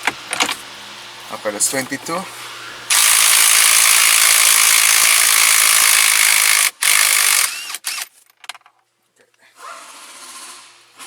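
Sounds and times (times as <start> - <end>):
cordless power tool running: 2.1 - 8.1.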